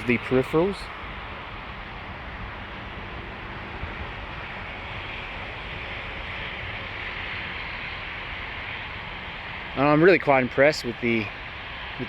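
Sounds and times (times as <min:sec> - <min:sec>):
outdoor hiss: 0:04.0 - 0:12.0.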